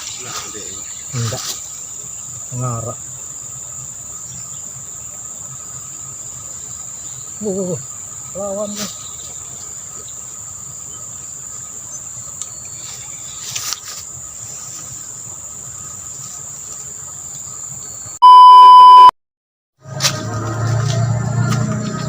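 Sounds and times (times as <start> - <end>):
insects chorus: 0.0 - 18.2, 19.8 - 22.0
electronic beep: 18.2 - 19.1.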